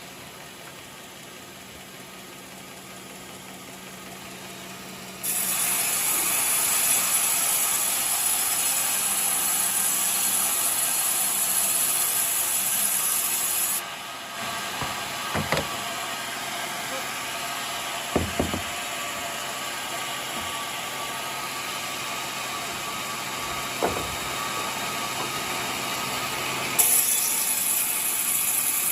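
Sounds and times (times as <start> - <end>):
sawmill saw cutting timber: 0.0 - 28.9.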